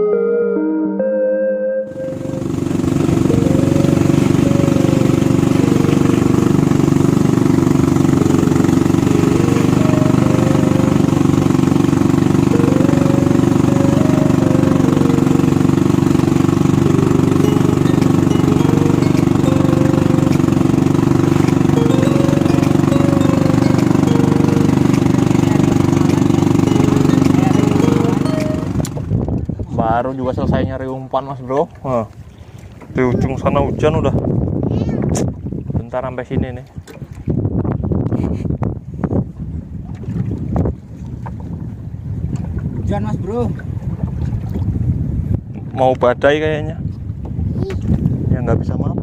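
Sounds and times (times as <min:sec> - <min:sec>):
small engine running steadily: 0:01.9 - 0:29.7.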